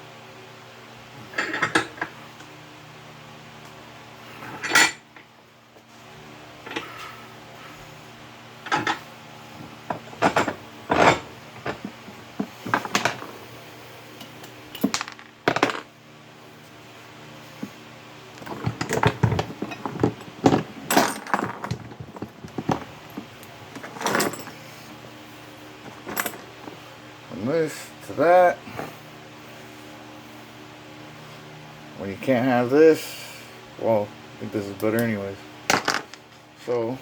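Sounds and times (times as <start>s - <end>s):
metal tools clinking: 23.7s - 24.6s.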